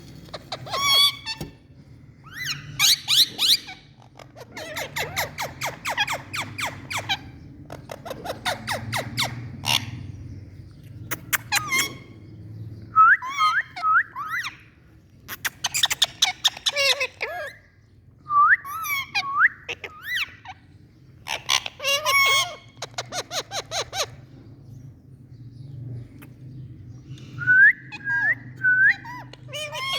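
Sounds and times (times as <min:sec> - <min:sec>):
parrot squeaky chirps: 0:00.2 - 0:01.6, 0:02.2 - 0:10.0, 0:11.1 - 0:12.2, 0:13.2 - 0:14.7, 0:15.3 - 0:17.7, 0:18.6 - 0:20.6, 0:21.2 - 0:24.3, 0:27.9 - 0:29.9.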